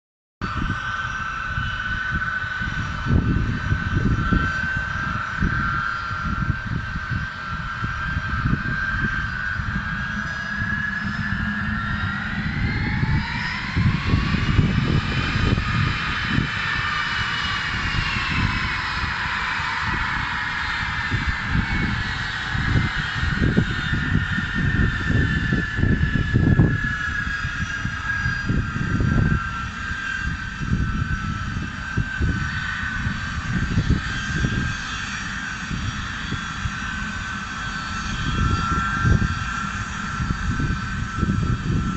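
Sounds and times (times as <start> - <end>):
airplane engines whining: 0.4 - 41.9
low rumble: 0.4 - 41.9.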